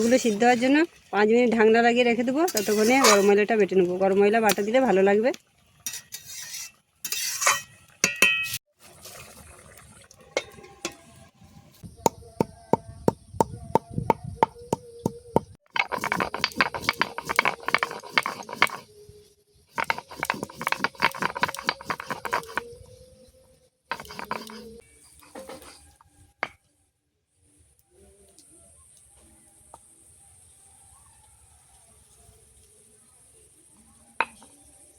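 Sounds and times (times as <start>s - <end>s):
spices clinking: 14.5s - 18.9s, 19.7s - 22.7s, 23.9s - 24.8s
rhythmic grinding strokes: 15.4s - 18.9s, 19.7s - 22.6s, 23.9s - 24.8s.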